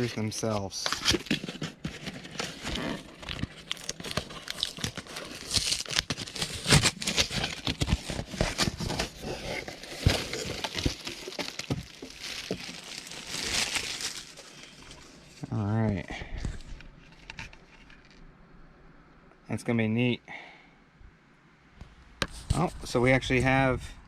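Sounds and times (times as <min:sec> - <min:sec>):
plastic wrap crinkling: 0:00.9 - 0:15.4.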